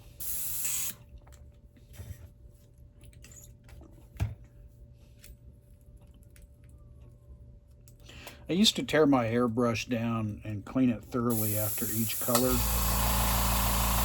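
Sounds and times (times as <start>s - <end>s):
airbrush spray hiss: 0.0s - 0.9s, 11.3s - 14.0s.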